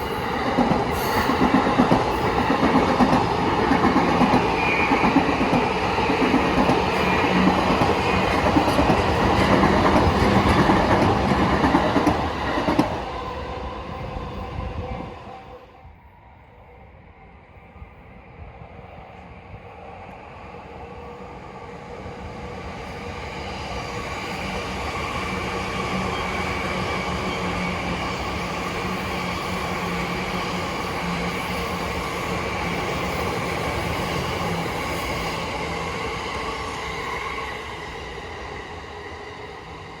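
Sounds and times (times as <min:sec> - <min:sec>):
electric train passing: 0:00.0 - 0:40.0.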